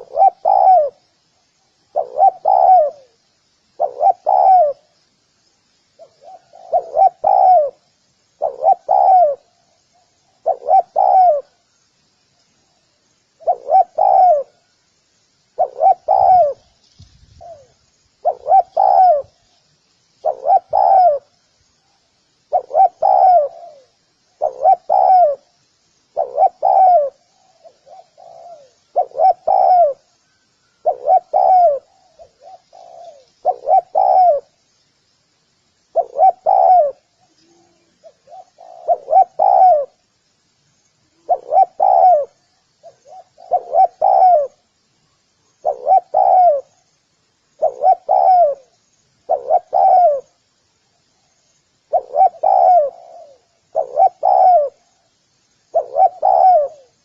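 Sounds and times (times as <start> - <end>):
dove cooing: 0.0 - 1.1, 1.9 - 5.0, 6.0 - 11.6, 13.4 - 14.7, 15.6 - 19.5, 20.2 - 21.3, 22.5 - 34.6, 35.9 - 40.0, 41.1 - 44.6, 45.6 - 46.8, 47.5 - 50.4, 51.9 - 55.1, 55.7 - 57.0.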